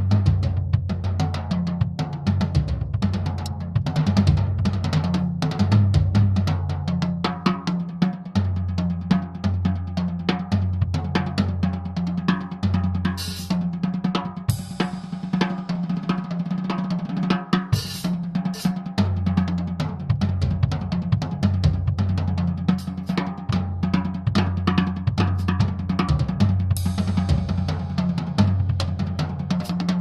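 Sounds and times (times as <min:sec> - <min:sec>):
drum kit groove: 0:00.0 - 0:30.0.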